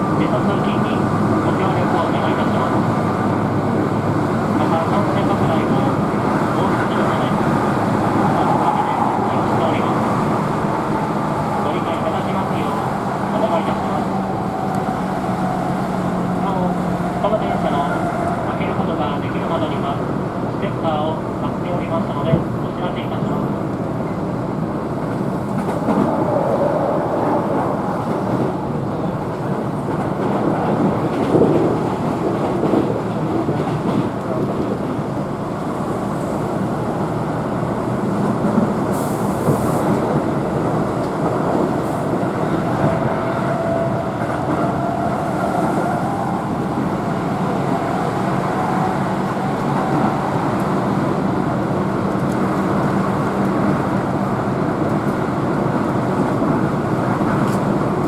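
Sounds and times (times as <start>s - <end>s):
train wheels rumbling on rail: 0.0s - 58.0s.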